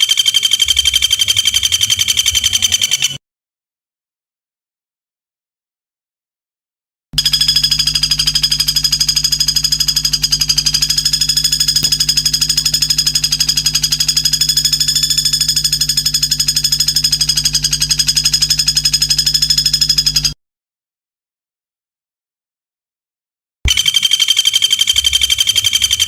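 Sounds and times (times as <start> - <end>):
songbird trill: 0.0 - 3.2.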